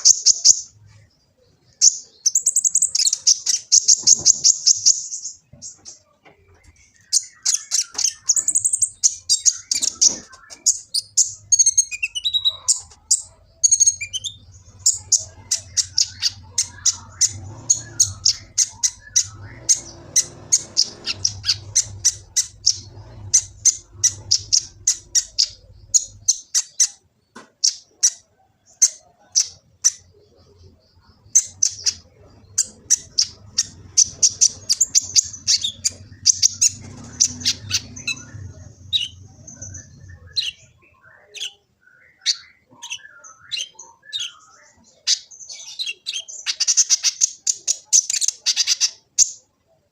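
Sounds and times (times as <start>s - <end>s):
sunbird singing high chirps: 0.0s - 49.5s
faint low hum: 4.0s - 27.5s, 28.8s - 45.9s.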